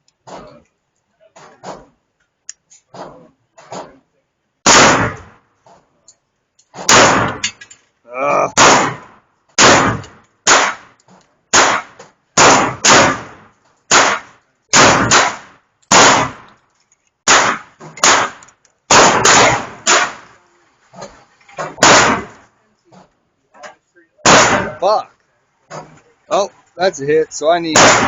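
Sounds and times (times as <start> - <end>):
airsoft pistol shots: 4.6 - 5.4, 6.8 - 7.5, 8.6 - 16.5, 17.3 - 20.3, 21.8 - 22.4, 24.2 - 24.8, 27.7 - 28.0.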